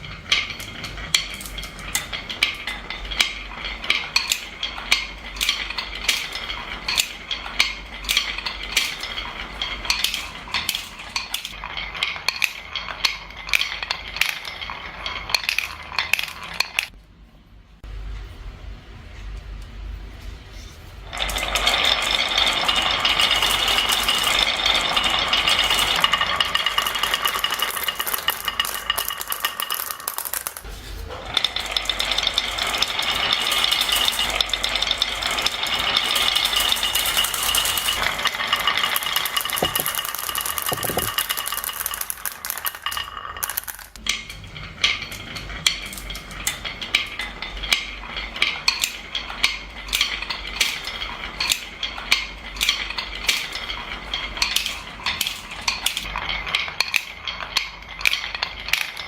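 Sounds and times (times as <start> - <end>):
marbles rattling down a track: 21.1 - 59.0
single marbles clacking: 38.9 - 44.0.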